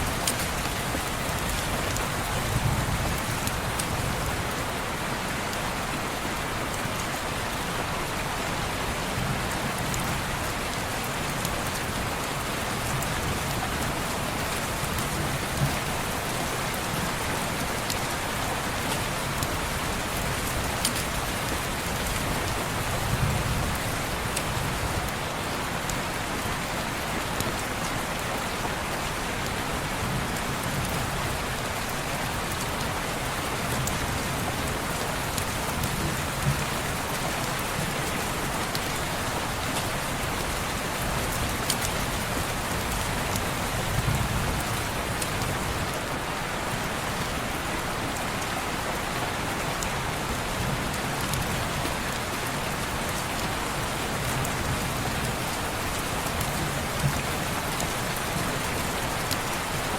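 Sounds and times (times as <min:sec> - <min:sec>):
heavy rain on a window: 0:00.0 - 0:59.9.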